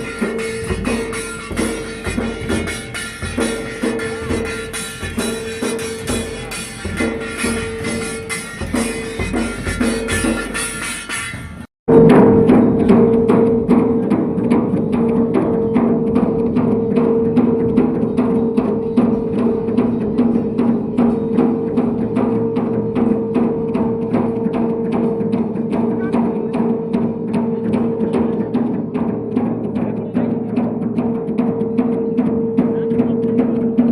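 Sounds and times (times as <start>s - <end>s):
steady held tone: 0.0s - 14.1s
drums beating rhythmically: 0.0s - 33.9s.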